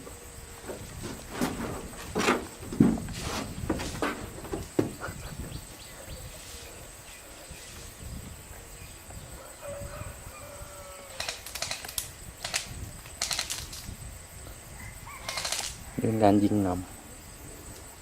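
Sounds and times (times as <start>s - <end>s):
outdoor background noise: 0.0s - 18.0s
bb guns firing sharp clicks: 11.2s - 13.9s, 15.2s - 15.8s.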